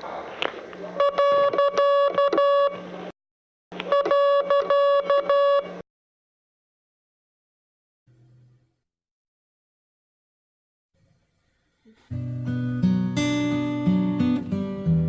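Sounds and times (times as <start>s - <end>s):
morse code tone: 1.0s - 2.8s, 3.9s - 5.8s.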